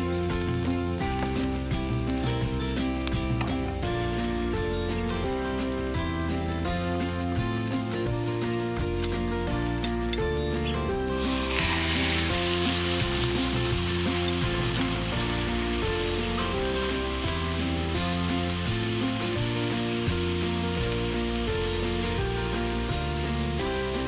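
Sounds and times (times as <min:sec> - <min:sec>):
sausages sizzling in a skillet: 0:11.0 - 0:24.0.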